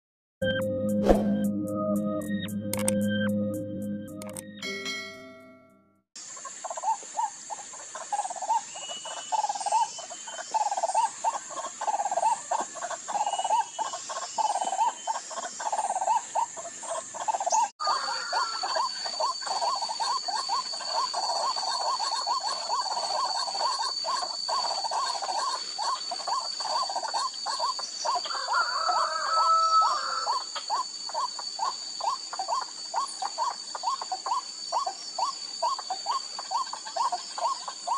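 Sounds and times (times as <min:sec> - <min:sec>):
waterhen croaking calls: 0:06.3 - 0:37.9
high insect whine: 0:17.8 - 0:37.9.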